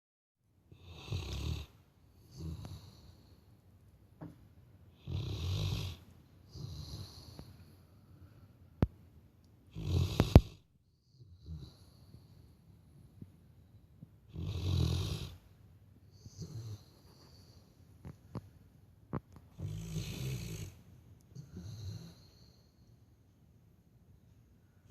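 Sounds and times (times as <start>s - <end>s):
dog snoring loudly: 0.7s - 3.1s, 5.0s - 7.4s, 9.7s - 10.6s, 11.3s - 11.9s, 14.3s - 15.4s, 16.2s - 17.0s, 19.5s - 20.8s, 21.4s - 22.3s.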